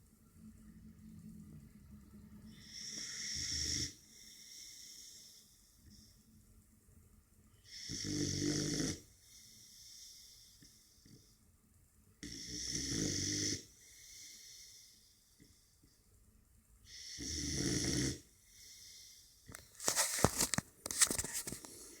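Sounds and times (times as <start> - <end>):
faint breaths: 2.4 - 6.5, 9.1 - 11.6, 13.6 - 16.1, 18.2 - 22.0
puppy snoring: 2.6 - 4.0, 7.7 - 9.1, 12.2 - 14.6, 16.9 - 18.3
sharp clicks and rubbing: 19.6 - 21.8.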